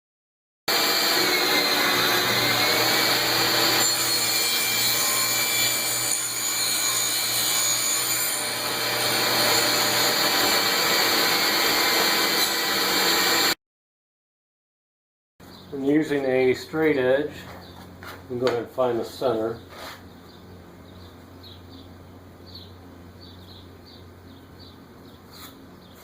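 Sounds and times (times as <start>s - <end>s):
shop vacuum running: 0.7s - 5.4s, 8.3s - 13.6s
power saw cutting board: 0.7s - 13.6s.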